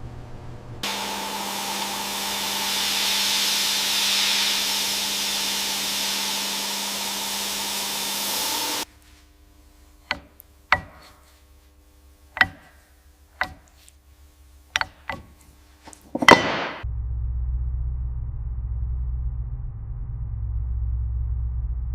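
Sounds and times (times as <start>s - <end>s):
loud spraying hiss: 0.9s - 8.8s.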